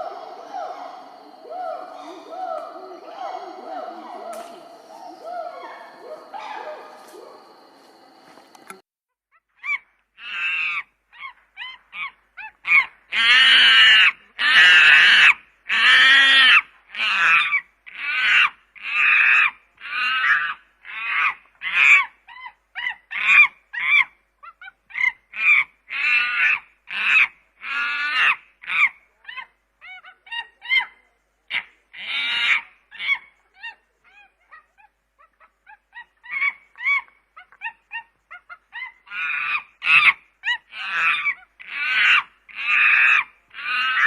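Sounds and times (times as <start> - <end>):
chimpanzee screaming: 0.0 - 7.4, 10.2 - 24.1, 31.5 - 33.2, 34.1 - 44.0.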